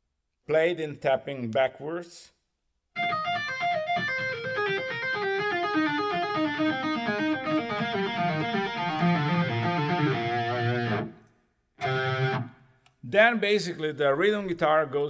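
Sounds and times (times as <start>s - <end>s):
fast tapped electric guitar lead: 3.0s - 11.2s, 11.8s - 12.6s.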